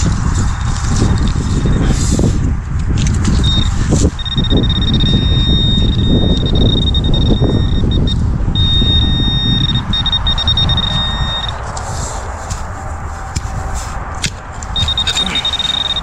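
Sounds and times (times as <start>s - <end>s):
metal detector high-pitched tone: 3.4s - 11.6s, 14.8s - 16.0s.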